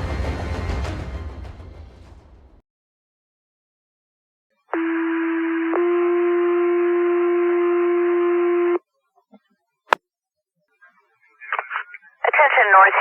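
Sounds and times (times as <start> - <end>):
radio hiss: 11.3 - 13.0.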